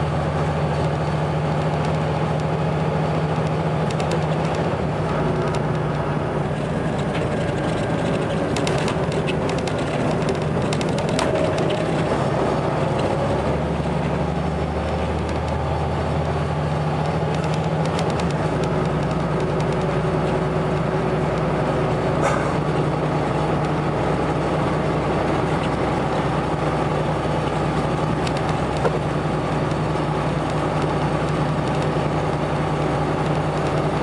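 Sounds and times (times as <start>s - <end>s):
bus diesel engine droning: 0.0s - 34.0s
faint rattles: 5.4s - 12.3s.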